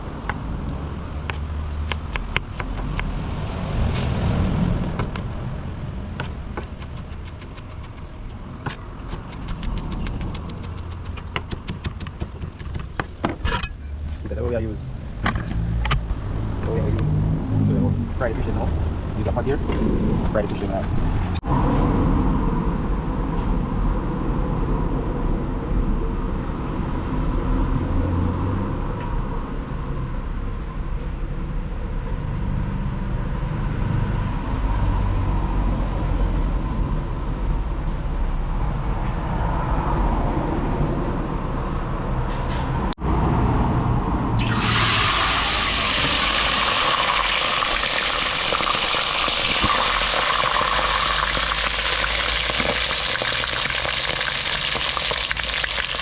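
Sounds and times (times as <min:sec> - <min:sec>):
low rumbling noise: 0:13.7 - 0:25.6
fish sizzling in hot oil: 0:44.4 - 0:56.0.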